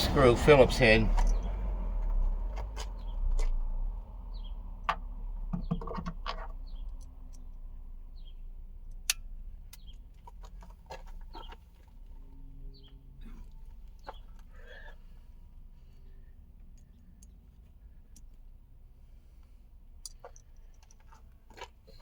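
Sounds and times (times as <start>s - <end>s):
bird chirping: 0.0s - 1.8s, 4.2s - 4.7s, 6.6s - 8.6s, 9.7s - 10.0s, 12.7s - 15.0s.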